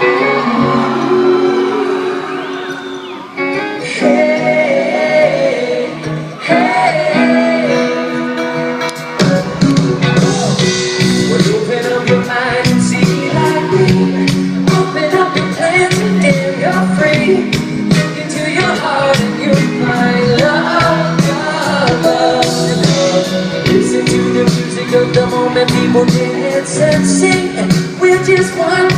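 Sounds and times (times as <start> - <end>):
live band music: 0.0 - 28.9
man singing: 3.6 - 28.9.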